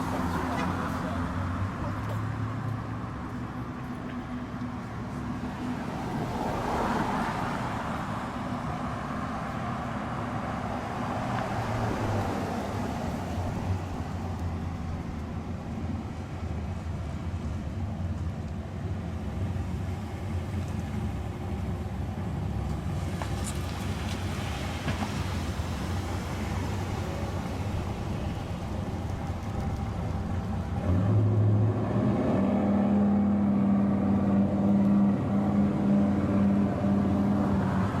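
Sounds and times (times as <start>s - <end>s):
vehicle engine running: 25.8s - 38.0s.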